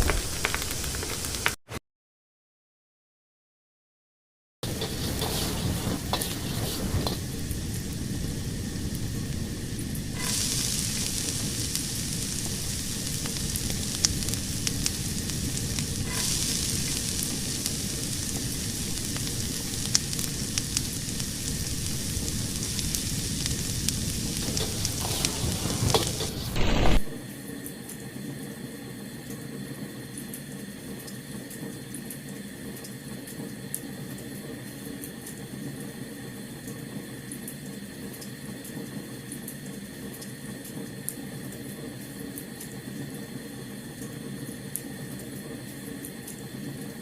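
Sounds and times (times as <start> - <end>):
fire crackling and hissing: 0.0 - 1.6, 4.6 - 27.3
sharp pops from fire: 0.0 - 1.6, 4.6 - 27.2.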